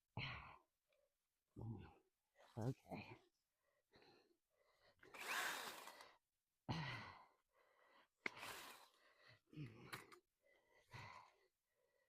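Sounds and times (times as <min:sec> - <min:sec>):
woman breathing hard and sighing: 0:03.0 - 0:12.0.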